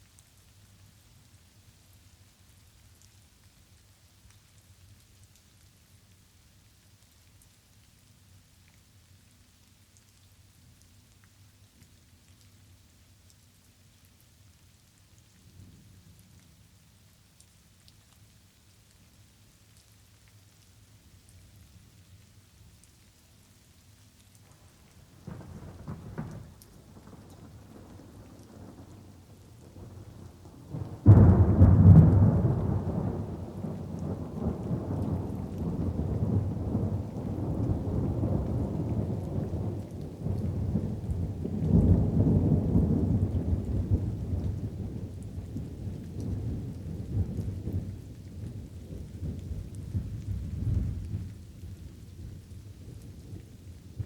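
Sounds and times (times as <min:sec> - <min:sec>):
light rain: 0:00.0 - 0:54.0
thunder rolling: 0:30.7 - 0:39.8.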